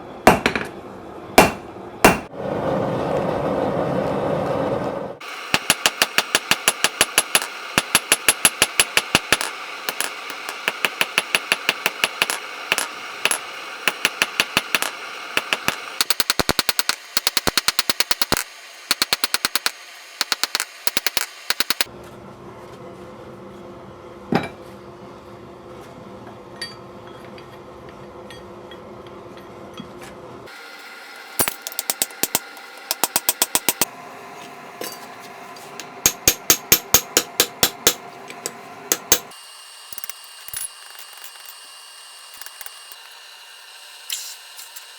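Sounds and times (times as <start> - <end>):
hammer striking steel on anvil: 0.3 - 0.8, 1.4 - 2.3, 5.5 - 21.9, 31.4 - 33.9, 35.8 - 39.4.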